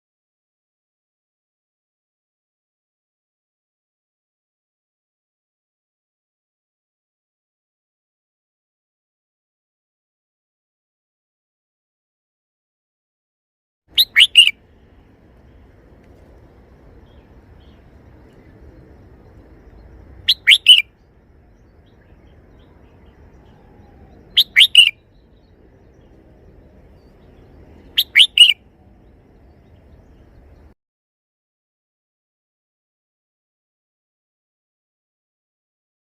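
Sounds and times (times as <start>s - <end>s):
bird singing short phrase: 13.9s - 14.6s, 16.9s - 30.8s.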